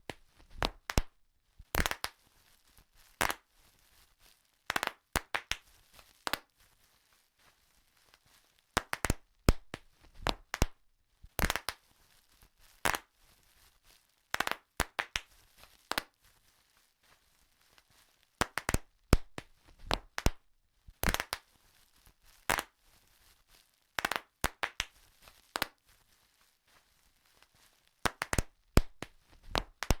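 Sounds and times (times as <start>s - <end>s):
bubble wrap popping: 0.0s - 30.0s
plastic sheet crinkling: 1.6s - 10.5s, 11.3s - 30.0s.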